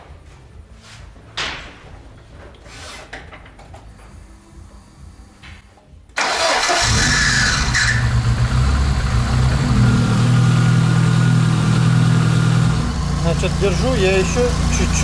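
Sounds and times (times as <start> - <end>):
car engine starter cranking: 6.2 - 9.2
car engine idling: 6.2 - 15.0.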